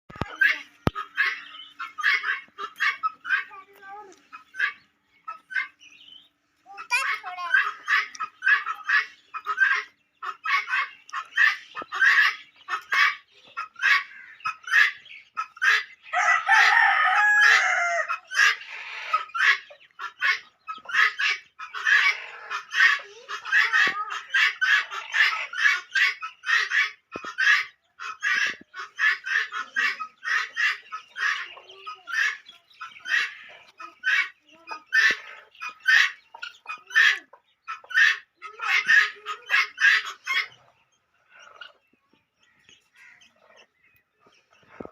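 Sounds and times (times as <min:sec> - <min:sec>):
chickens clucking: 0:00.1 - 0:44.9
rooster crowing: 0:16.2 - 0:18.1.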